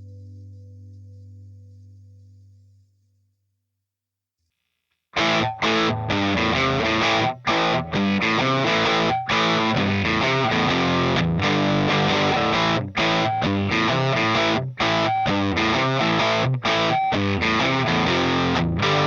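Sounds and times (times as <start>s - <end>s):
electric guitar chord riff: 5.2s - 19.0s.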